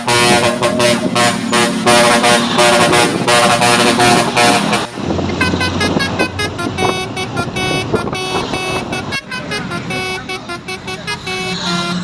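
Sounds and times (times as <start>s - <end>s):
musical truck air horn: 0.0s - 12.0s.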